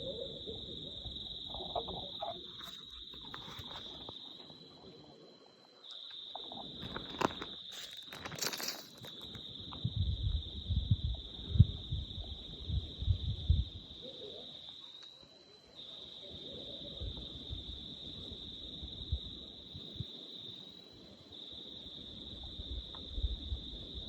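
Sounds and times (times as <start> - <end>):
night insect chorus trilling: 0.0 - 24.0
dull low thumps: 9.8 - 13.8.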